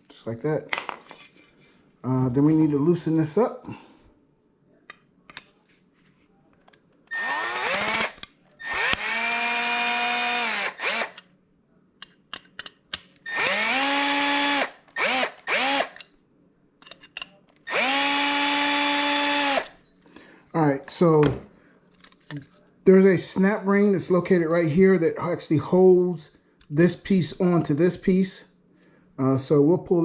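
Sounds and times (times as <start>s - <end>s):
power drill whining: 7.1s - 11.2s, 13.3s - 16.0s, 17.7s - 19.7s.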